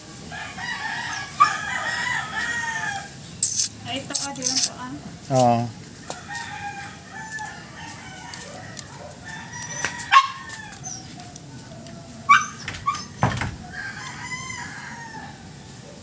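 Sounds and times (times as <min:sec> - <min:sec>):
rooster crowing: 0:00.3 - 0:03.2, 0:06.0 - 0:15.9.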